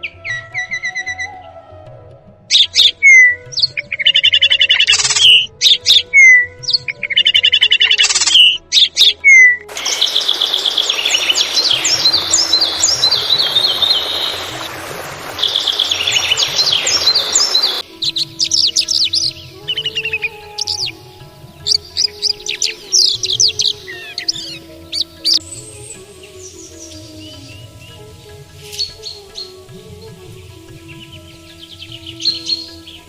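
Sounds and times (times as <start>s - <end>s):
songbird trills and whistles: 2.5s - 14.6s, 15.4s - 21.0s, 21.6s - 29.7s, 30.6s - 33.0s
birds chirping: 2.5s - 33.0s
steady hiss: 9.7s - 33.0s.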